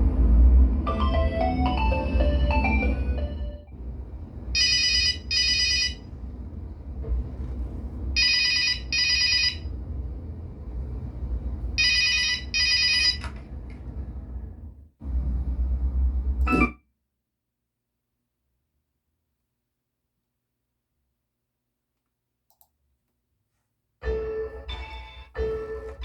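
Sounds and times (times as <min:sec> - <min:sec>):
steady low hum: 0:00.0 - 0:16.7
old telephone ringtone: 0:04.6 - 0:06.1, 0:08.2 - 0:09.7, 0:11.8 - 0:13.2.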